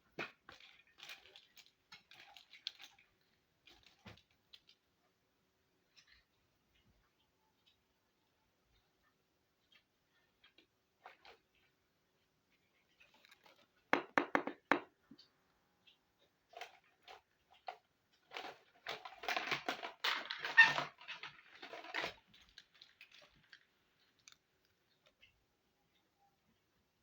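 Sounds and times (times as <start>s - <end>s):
toy pieces clattering and scraping: 0.2s - 4.8s, 12.5s - 13.8s, 15.8s - 25.3s.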